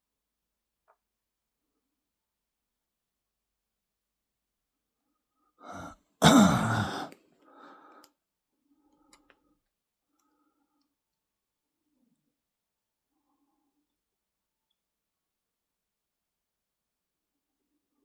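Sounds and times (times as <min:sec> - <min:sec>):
loud falling sigh: 0:05.7 - 0:07.1
man breathing in: 0:05.7 - 0:07.8
faint breath out: 0:05.7 - 0:08.0.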